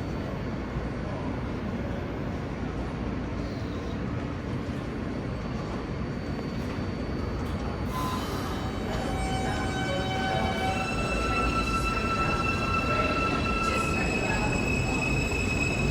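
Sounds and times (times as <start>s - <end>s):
train wheels rumbling on track: 4.0s - 15.9s
steady whining tones: 8.4s - 15.9s.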